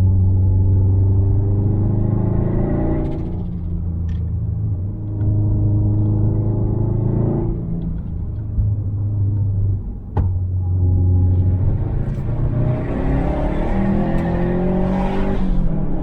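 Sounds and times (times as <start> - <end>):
car engine under load: 7.5 - 16.0.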